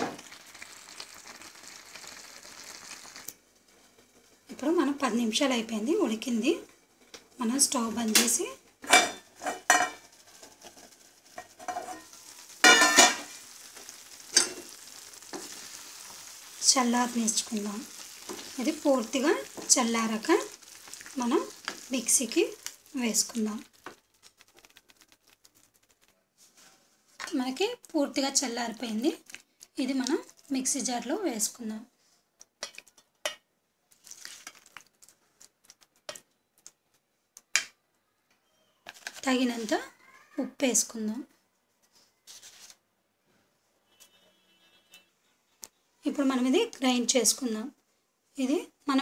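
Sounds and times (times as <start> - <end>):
faint sizzle: 0.0 - 33.0, 33.9 - 36.2, 38.0 - 42.7
spatula scraping a pan: 8.9 - 24.8.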